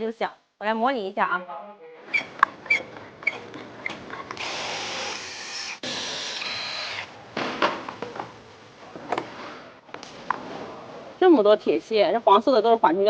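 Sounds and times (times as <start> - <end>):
power tool running: 4.4 - 7.1.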